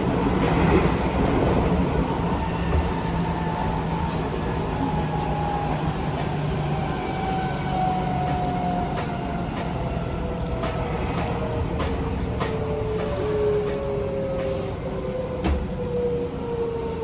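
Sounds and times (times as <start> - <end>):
train inverter whining: 0.0 - 17.0
wheels rumbling on rails: 0.0 - 17.0.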